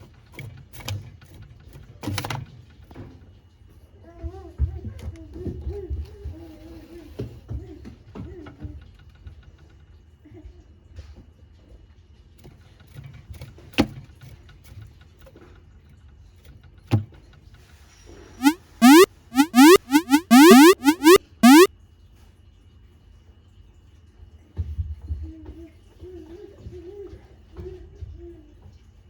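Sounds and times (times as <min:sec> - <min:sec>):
cartoon rising pitch sweeps: 0:18.4 - 0:21.7.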